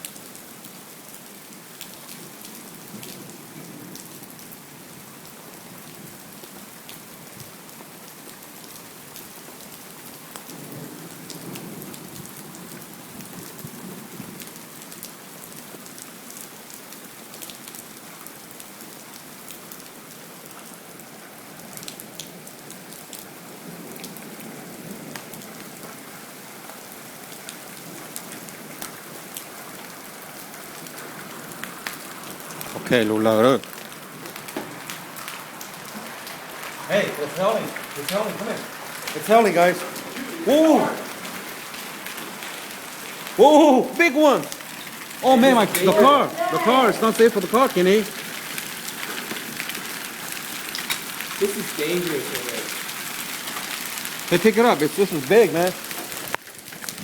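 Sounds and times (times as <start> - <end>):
heavy rain: 0.0 - 57.0
raindrops ticking on hard surfaces: 0.0 - 57.0.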